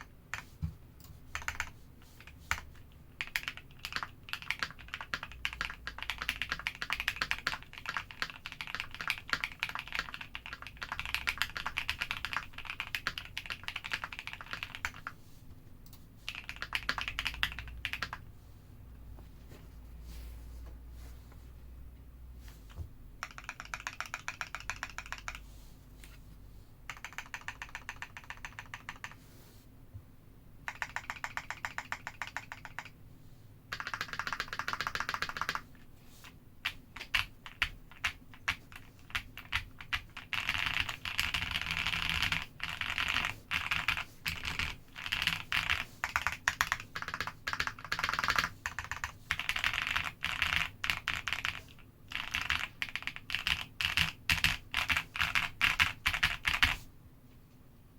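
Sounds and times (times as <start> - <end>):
mechanical keyboard typing: 0.0 - 15.2, 16.3 - 18.3, 23.2 - 25.4, 26.9 - 29.2, 30.6 - 33.0, 33.7 - 35.8, 36.6 - 56.8.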